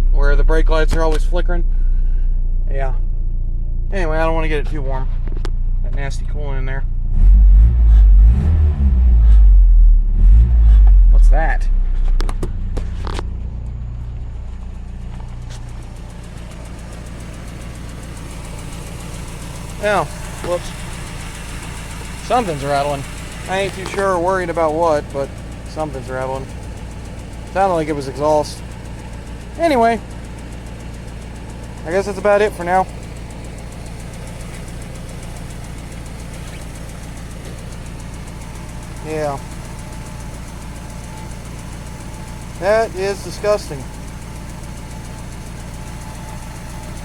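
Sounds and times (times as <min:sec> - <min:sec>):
four-cylinder engine idling: 0:00.0 - 0:07.1, 0:10.9 - 0:47.0
rapid even ticking: 0:14.4 - 0:47.0.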